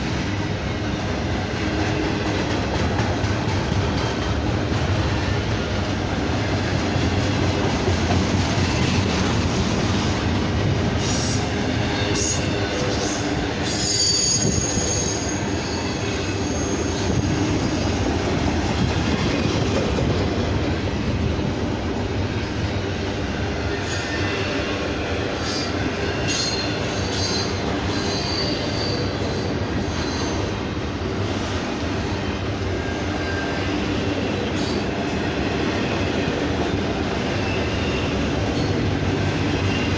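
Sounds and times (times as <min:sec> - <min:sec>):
freight train wheels rumbling: 0:00.0 - 0:39.9
high wheel squeal: 0:11.0 - 0:17.9, 0:25.4 - 0:30.6.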